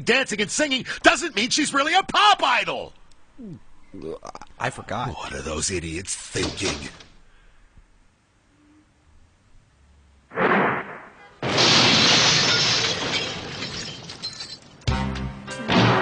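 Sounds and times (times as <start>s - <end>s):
short whoosh: 10.3s - 11.3s
cartoon explosion crash: 10.3s - 13.2s.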